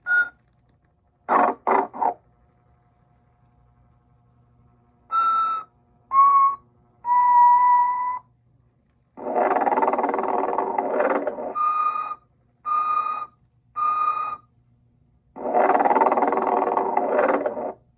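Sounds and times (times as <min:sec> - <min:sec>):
short whistled notes: 0:00.0 - 0:00.4, 0:05.1 - 0:08.3, 0:11.4 - 0:14.5
toy figure snoring: 0:01.3 - 0:02.2, 0:09.2 - 0:11.6, 0:15.4 - 0:17.8
long snore: 0:15.4 - 0:17.8.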